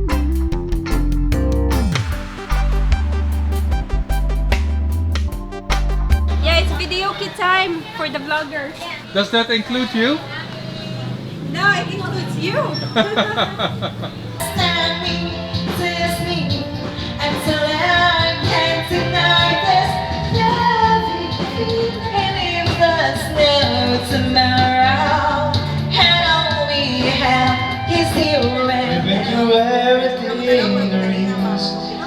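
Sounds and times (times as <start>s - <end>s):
backing track with steady beat: 0.0s - 9.0s, 13.0s - 30.1s
woman singing karaoke: 6.3s - 8.9s, 14.4s - 32.0s.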